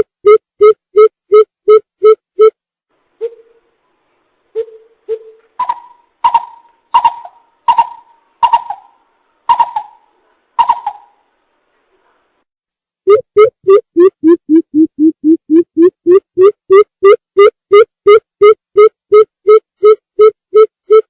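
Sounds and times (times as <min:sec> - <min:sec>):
coucal hooting: 0:04.6 - 0:11.2.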